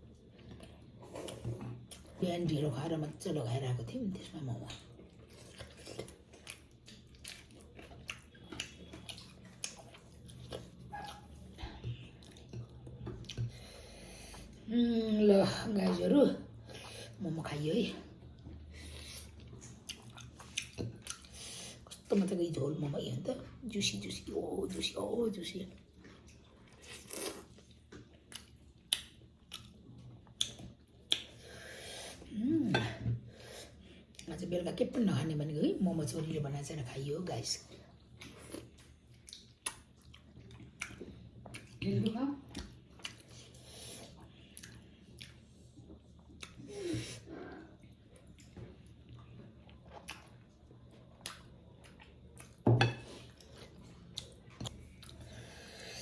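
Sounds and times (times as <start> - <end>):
person chewing: 4.9 - 13.6, 18.4 - 22.0, 25.8 - 31.4, 38.1 - 41.8, 42.5 - 47.2, 47.8 - 56.0.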